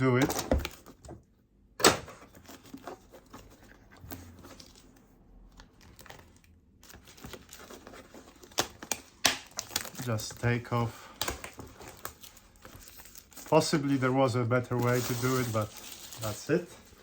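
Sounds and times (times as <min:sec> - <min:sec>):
knife scratching and tearing packaging: 0:14.7 - 0:17.0.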